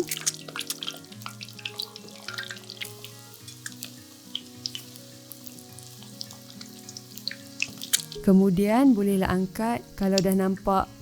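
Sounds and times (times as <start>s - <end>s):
oil crackling and popping: 0.0s - 8.2s.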